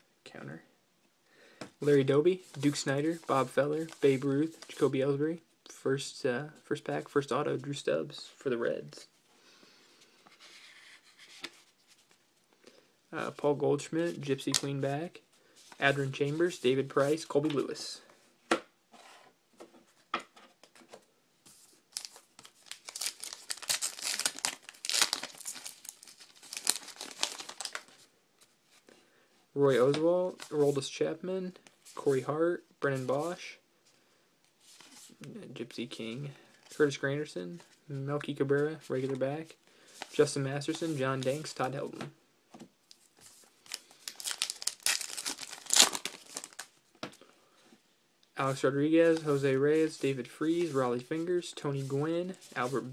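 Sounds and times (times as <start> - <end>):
wrapper tearing and crinkling: 22.0 - 27.9, 43.6 - 46.7.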